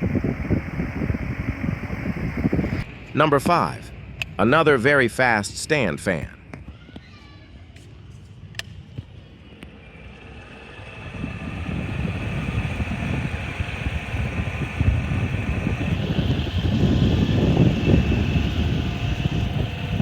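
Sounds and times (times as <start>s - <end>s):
wind rumble on microphone: 0.0s - 2.9s, 10.7s - 20.0s
stand fan whirring: 0.0s - 7.0s, 7.7s - 20.0s.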